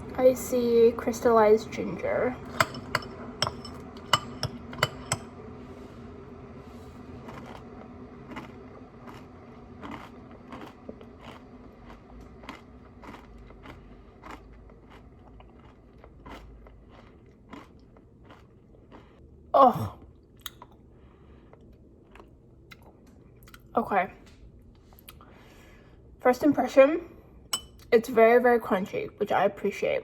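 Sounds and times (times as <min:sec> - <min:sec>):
crunching and chewing granola: 0:07.1 - 0:19.2, 0:21.4 - 0:23.6.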